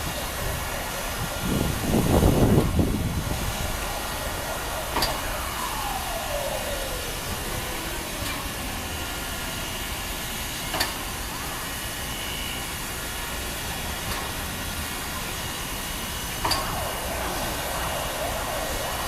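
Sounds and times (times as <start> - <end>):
faint downward gliding tone: 0.0 - 9.6
steam hissing from locomotive: 0.0 - 19.0.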